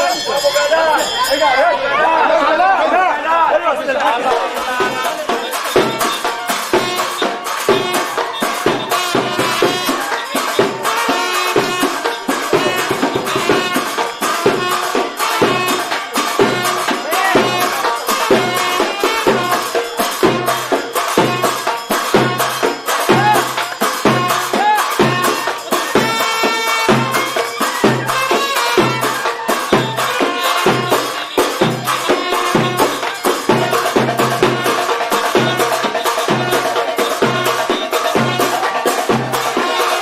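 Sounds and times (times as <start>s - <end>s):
instrumental melody line: 3.7s - 40.0s
hand-drum beat: 3.9s - 40.0s.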